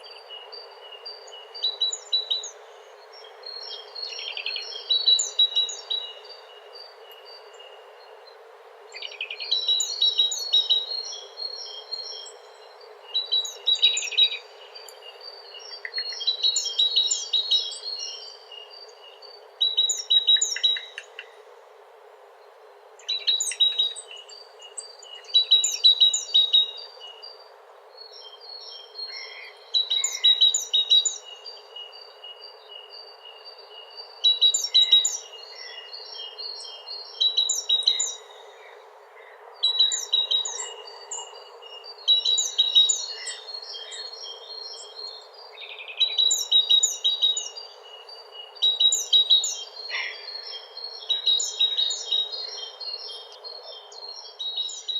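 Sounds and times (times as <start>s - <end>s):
faint background hiss: 0.0s - 54.9s
songbird singing: 0.0s - 54.9s.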